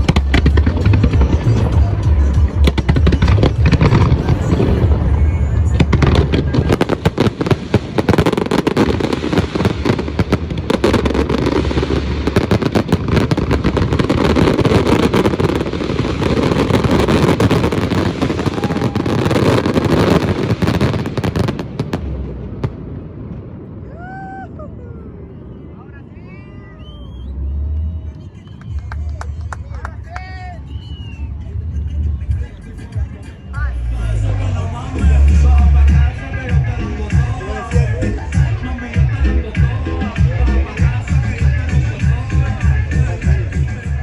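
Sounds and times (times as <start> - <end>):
music: 0.0 - 21.6, 31.2 - 44.0
heavy low thumps: 0.0 - 23.7
fireworks crackling and banging: 0.0 - 24.7, 28.2 - 44.0.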